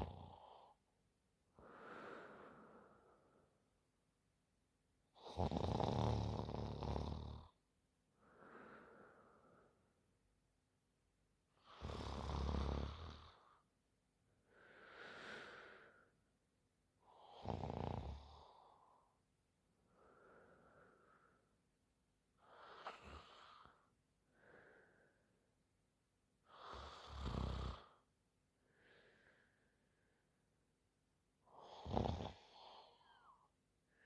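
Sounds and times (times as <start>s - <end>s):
woman snoring: 0.0s - 0.7s, 5.2s - 7.6s, 11.6s - 13.4s, 17.2s - 18.6s, 26.5s - 27.9s, 31.6s - 33.3s.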